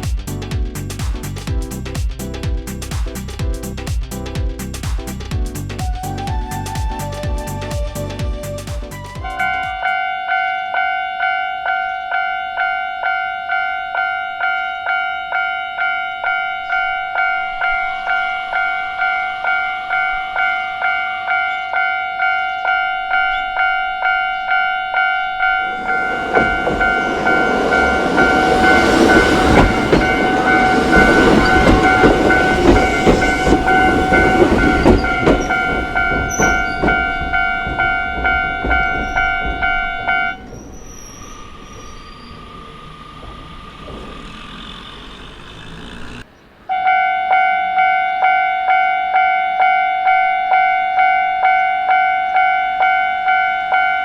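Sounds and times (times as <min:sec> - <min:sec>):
level-crossing warning bell: 0:09.2 - 0:45.2, 0:46.7 - 0:54.0
train wheels clattering: 0:14.4 - 0:46.3.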